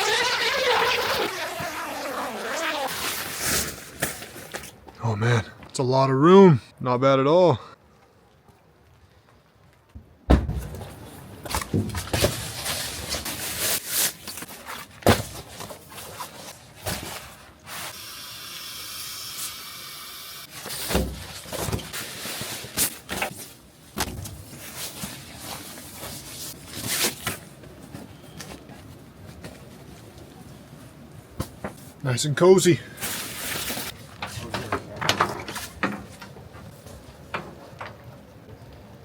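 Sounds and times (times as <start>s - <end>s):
tent fabric rustling: 0.0s - 4.8s, 12.0s - 18.0s, 20.5s - 32.0s, 33.0s - 34.5s
knocks and scrapes: 33.1s - 38.2s.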